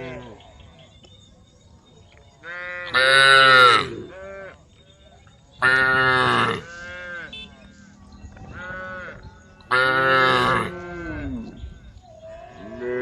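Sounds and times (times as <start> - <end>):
cattle mooing: 2.4 - 4.6, 5.6 - 7.3, 8.4 - 11.6.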